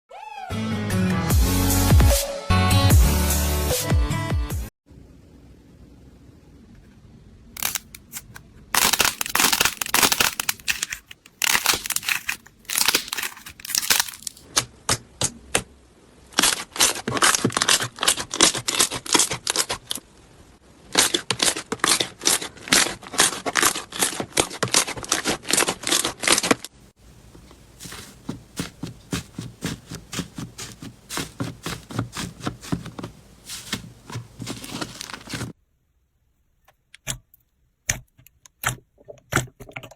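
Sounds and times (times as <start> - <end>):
slime crackling and popping: 7.6 - 14.4, 27.8 - 35.5.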